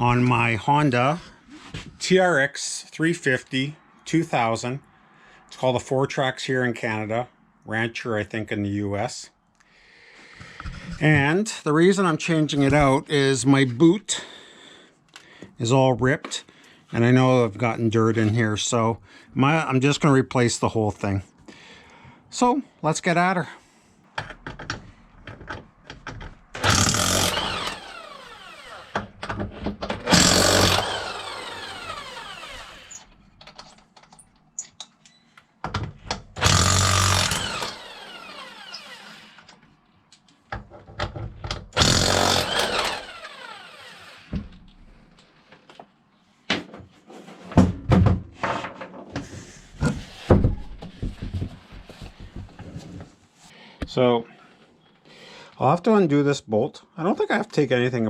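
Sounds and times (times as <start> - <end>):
metal clicks and knocks: 24.2 - 26.6
power tool whining: 26.6 - 29.2, 30.0 - 33.2, 36.4 - 39.6, 41.8 - 44.6.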